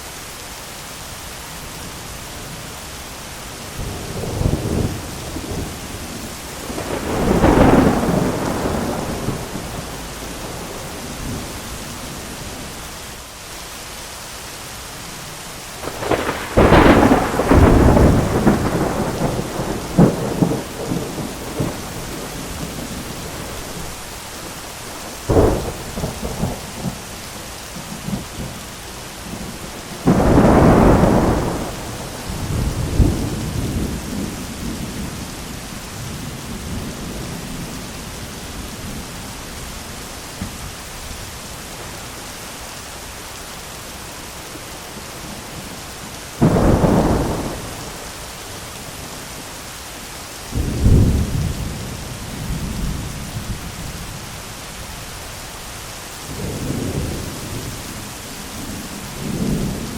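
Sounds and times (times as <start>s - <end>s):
steady rain: 0.0s - 59.9s
thunder rumbling and cracking: 3.8s - 12.7s, 15.8s - 27.2s, 29.2s - 39.1s, 45.1s - 48.2s, 50.5s - 54.3s, 56.2s - 59.9s.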